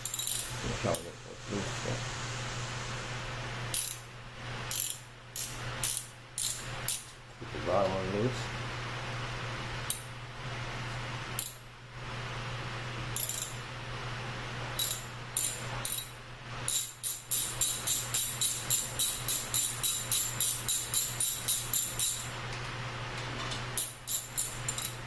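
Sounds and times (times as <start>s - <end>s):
socket ratchet clicking: 4.7s - 7.0s, 13.2s - 13.6s, 23.8s - 25.0s.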